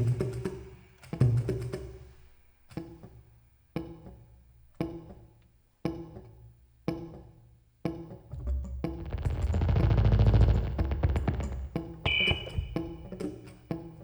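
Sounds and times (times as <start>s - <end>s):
sharp ringing percussive strikes: 11.8s - 13.5s.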